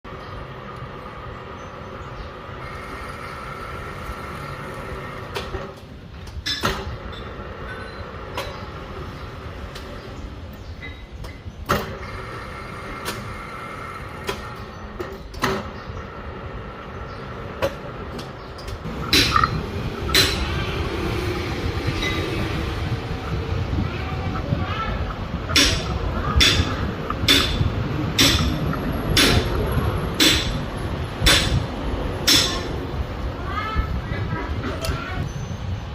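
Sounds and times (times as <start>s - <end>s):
metal lathe rumbling: 0.1s - 5.9s, 11.8s - 33.4s
lathe humming and whining: 2.4s - 5.3s
sharp metallic clicks: 17.6s - 20.5s, 25.5s - 32.8s.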